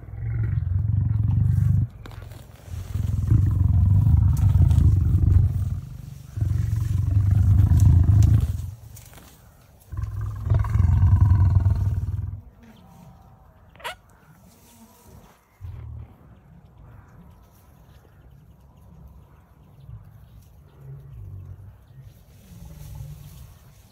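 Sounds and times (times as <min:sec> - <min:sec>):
lion growling: 0:00.0 - 0:09.1, 0:09.8 - 0:12.8.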